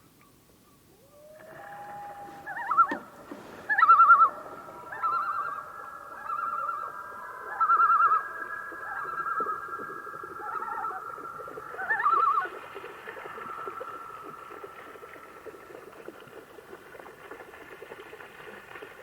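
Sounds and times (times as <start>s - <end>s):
loon tremolo calls: 1.0s - 15.0s.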